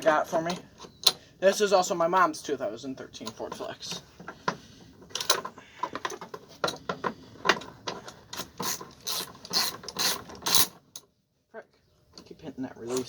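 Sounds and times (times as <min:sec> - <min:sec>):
ratchet clicking: 0:08.3 - 0:10.7.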